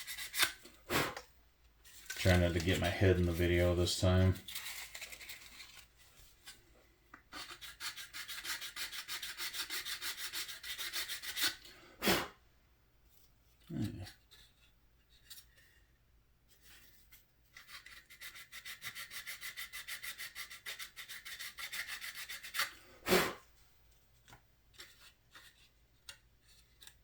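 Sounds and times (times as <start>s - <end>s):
dry sanding of putty on plastic: 7.4s - 11.7s, 17.6s - 23.4s.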